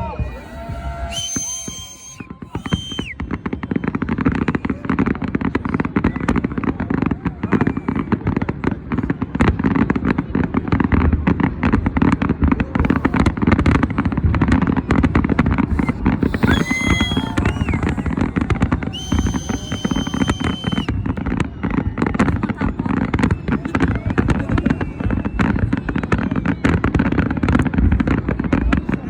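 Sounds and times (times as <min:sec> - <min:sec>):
fireworks whistling: 0:00.0 - 0:04.6, 0:14.4 - 0:28.8
fireworks bangs and crackles: 0:00.0 - 0:29.0.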